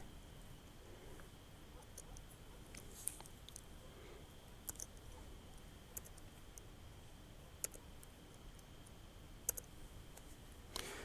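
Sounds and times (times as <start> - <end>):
keyboard keystrokes: 4.7 - 5.0, 7.6 - 7.8, 9.5 - 9.7.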